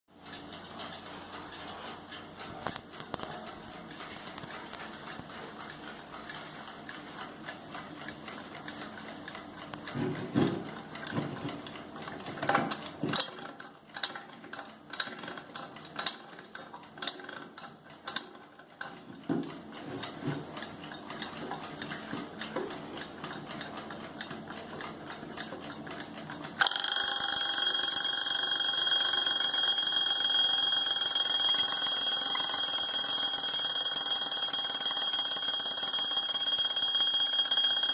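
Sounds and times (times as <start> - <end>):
alarm clock ringing: 26.6 - 37.9.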